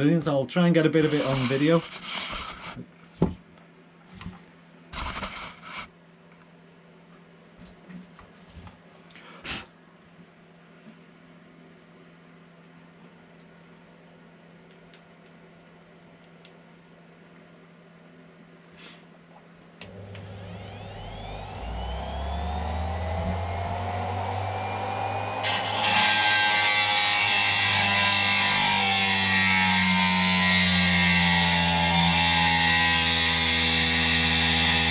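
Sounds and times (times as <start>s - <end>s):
cutting disc grinding metal: 0.8s - 2.8s, 19.9s - 34.9s
rotary tool motor whine: 1.0s - 2.8s, 4.9s - 5.9s, 19.9s - 28.0s.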